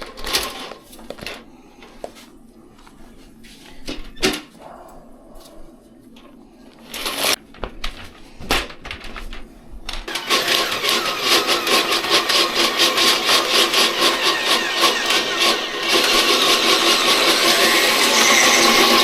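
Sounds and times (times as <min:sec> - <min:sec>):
power tool buzzing: 0:10.1 - 0:19.0.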